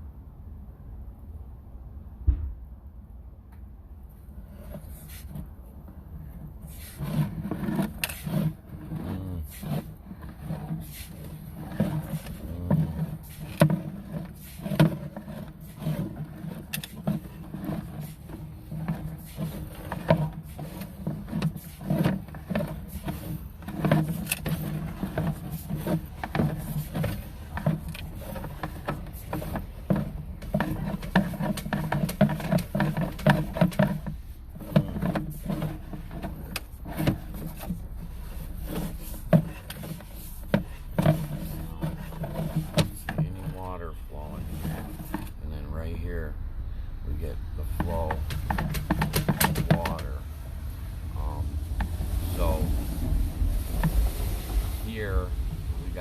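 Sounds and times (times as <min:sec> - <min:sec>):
cable knocking and scraping in drain: 0:04.4 - 0:56.0.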